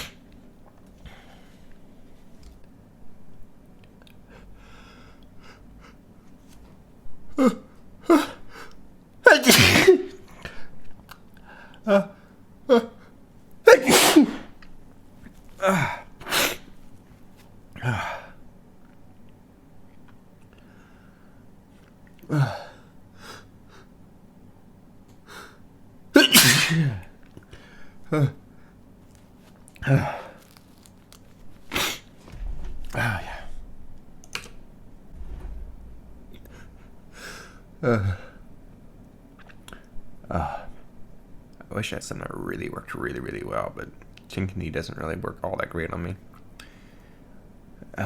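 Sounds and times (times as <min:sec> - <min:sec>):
faint breathing: 0:04.3 - 0:06.0
man sneezing: 0:09.2 - 0:10.2, 0:13.7 - 0:14.6, 0:26.2 - 0:27.1.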